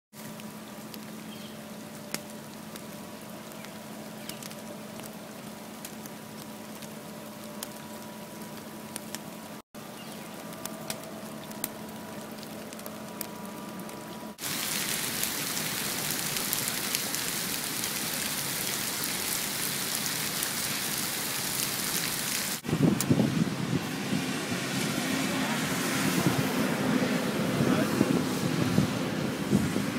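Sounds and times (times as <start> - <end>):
heavy rain: 0.1 - 29.9.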